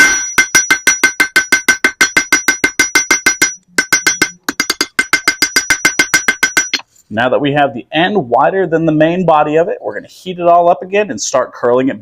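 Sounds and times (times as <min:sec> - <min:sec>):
hammer striking iron on anvil: 0:00.0 - 0:06.8.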